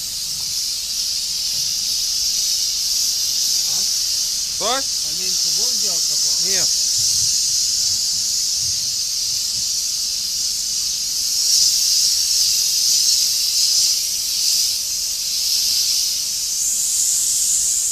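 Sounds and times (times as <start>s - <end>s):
paint sprayer gun hissing: 0.0s - 17.8s.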